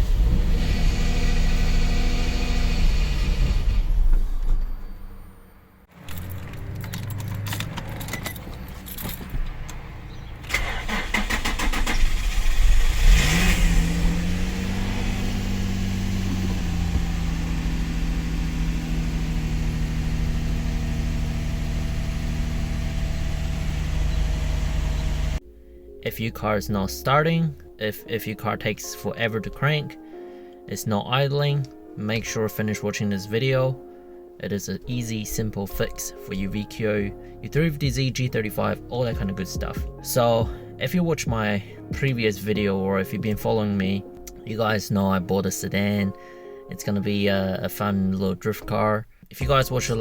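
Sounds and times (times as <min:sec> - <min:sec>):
car engine running: 0:00.0 - 0:25.4
engine cranking: 0:06.0 - 0:25.4.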